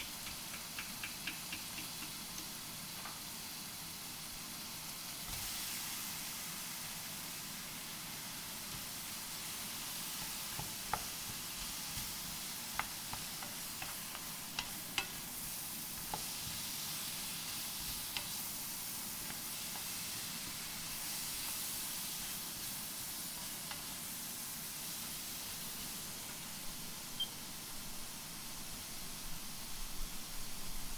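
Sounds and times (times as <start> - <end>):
food sizzling in a pan: 0.0 - 30.9.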